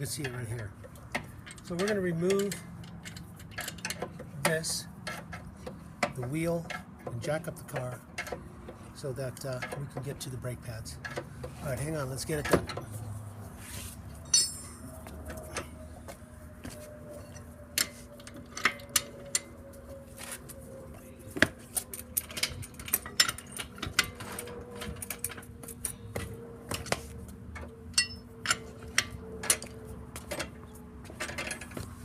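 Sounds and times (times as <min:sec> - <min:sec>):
metallic clicks of car jack: 0:00.0 - 0:08.8, 0:21.7 - 0:31.9.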